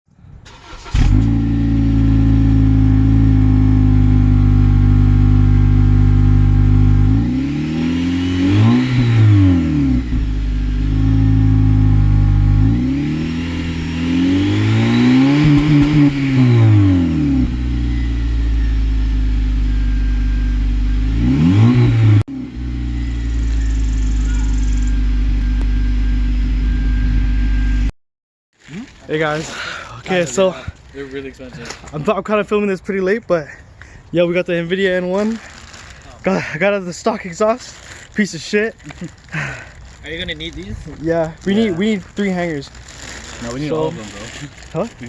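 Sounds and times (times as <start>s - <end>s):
car engine idling and revving: 0.5s - 27.9s, 39.9s - 45.0s.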